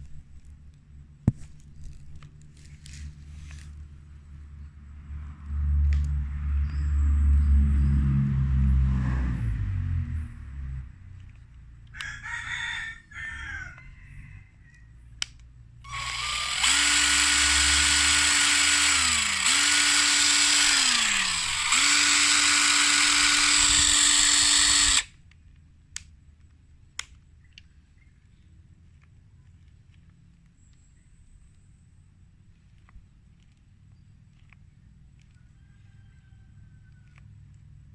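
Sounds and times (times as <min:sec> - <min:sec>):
impact wrench motor whining: 0:15.9 - 0:25.2.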